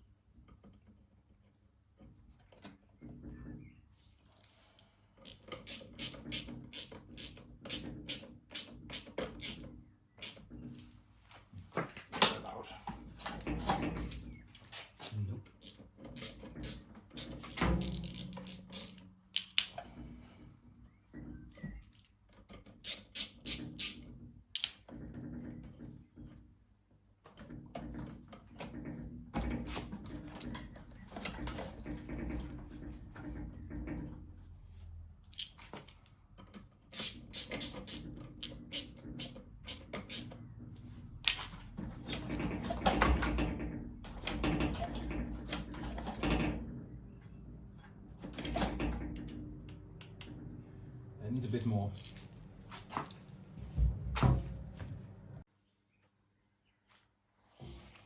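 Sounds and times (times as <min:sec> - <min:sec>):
hand tools clicking and scraping: 0:12.2 - 0:20.0, 0:21.8 - 0:24.8, 0:35.3 - 0:43.4.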